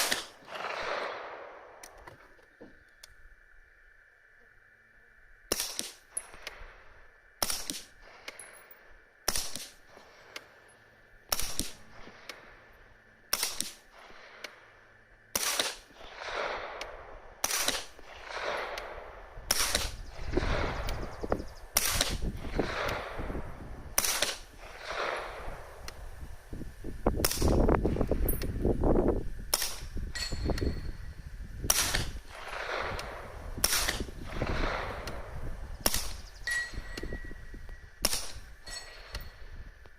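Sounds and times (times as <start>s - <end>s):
suppressed gunshots: 0.0s - 2.0s, 5.5s - 6.7s, 7.4s - 8.5s, 9.2s - 10.5s, 11.3s - 12.5s, 13.3s - 14.6s, 15.3s - 26.0s, 27.2s - 27.7s, 29.5s - 30.7s, 31.6s - 37.1s, 38.0s - 39.3s
low rumbling noise: 0.0s - 39.9s.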